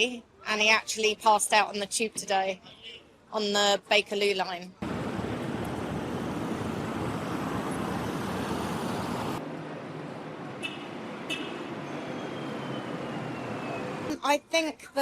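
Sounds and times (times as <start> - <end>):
traffic noise: 0.0 - 15.0
faint falling whistle: 12.0 - 14.0.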